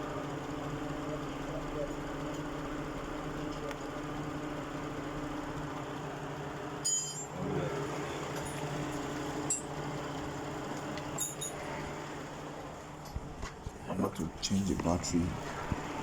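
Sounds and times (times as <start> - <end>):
metallic tool clinks: 6.8 - 7.3.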